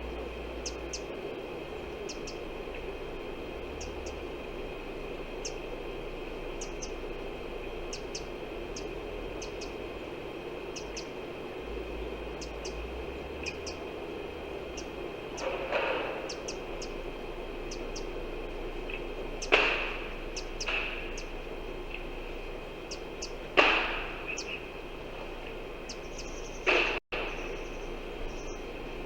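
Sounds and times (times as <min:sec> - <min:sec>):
birds chirping: 0:00.0 - 0:29.0
insect drone: 0:00.0 - 0:29.0.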